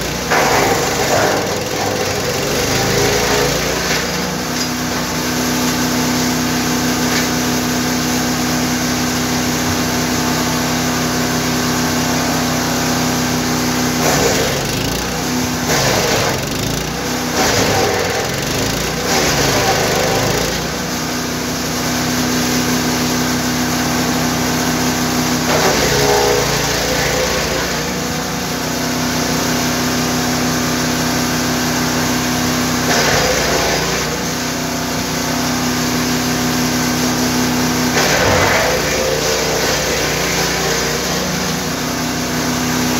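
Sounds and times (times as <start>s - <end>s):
wood chipper engine running: 0.0s - 42.9s.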